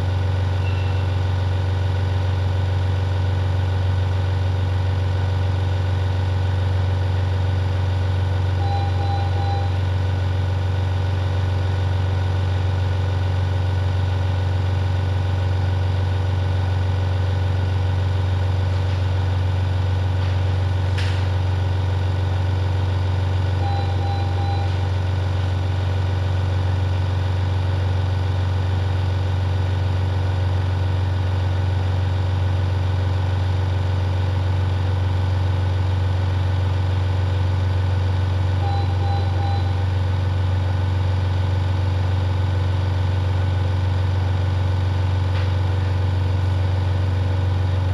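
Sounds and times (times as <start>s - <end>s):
short high electronic beeps: 0.6s - 1.2s, 8.6s - 9.8s, 23.6s - 24.8s, 38.6s - 39.8s.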